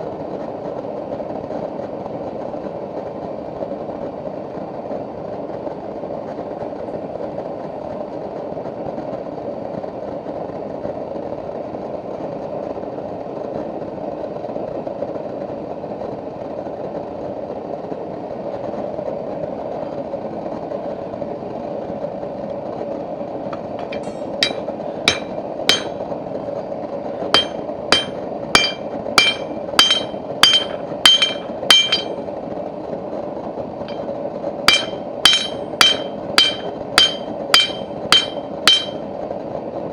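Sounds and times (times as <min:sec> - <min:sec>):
steady rushing noise: 0:23.5 - 0:39.9
hammer striking steel on anvil: 0:23.8 - 0:26.0, 0:27.4 - 0:32.2, 0:34.7 - 0:39.1.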